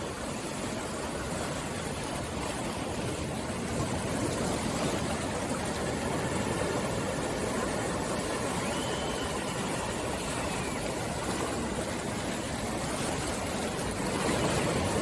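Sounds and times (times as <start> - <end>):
sea water rushing: 0.0 - 15.0.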